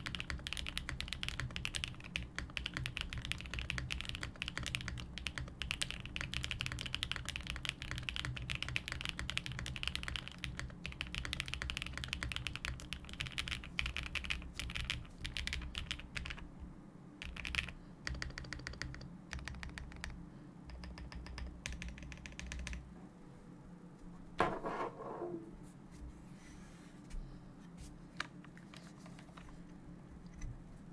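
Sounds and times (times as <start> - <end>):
mechanical keyboard typing: 0.0 - 16.4, 17.2 - 22.8.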